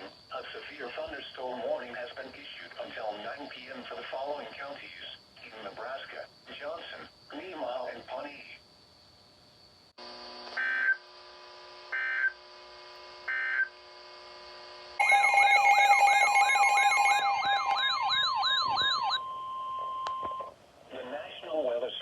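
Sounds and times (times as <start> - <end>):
warbling siren-like alert tone: 15.0 - 20.2
short electronic data beeps: 15.0 - 20.5
steady beep: 15.0 - 20.5
steady electronic tones: 15.0 - 20.5.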